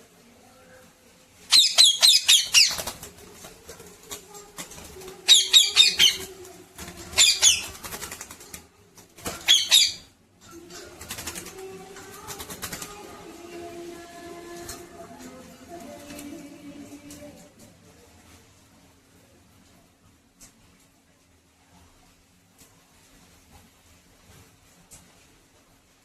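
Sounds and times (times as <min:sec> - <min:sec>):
parrot squawking: 0:01.5 - 0:03.0, 0:05.2 - 0:06.4, 0:07.1 - 0:07.8, 0:09.3 - 0:10.1.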